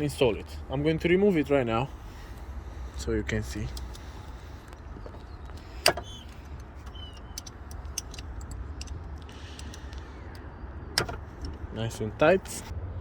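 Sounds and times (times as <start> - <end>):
steady low hum: 0.0 - 12.7
hand tools clinking on metal: 5.6 - 10.0.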